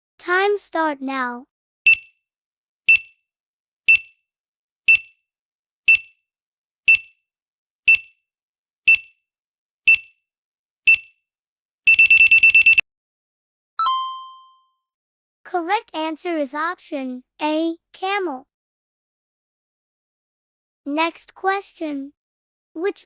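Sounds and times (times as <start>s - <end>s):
countdown timer ticks: 1.9s - 2.1s, 2.9s - 3.1s, 3.9s - 4.1s, 4.9s - 5.2s, 8.9s - 9.1s, 9.9s - 10.1s, 10.9s - 11.1s
rapid alarm beeping: 11.9s - 12.8s.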